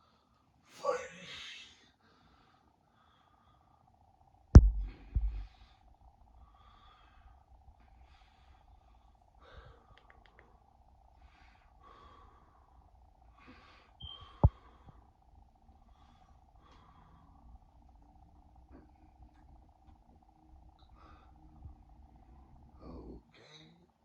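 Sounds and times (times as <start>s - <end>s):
faint hum: 1.8s - 24.0s
loud thump: 4.6s - 5.5s
sharp knock: 4.6s - 5.5s.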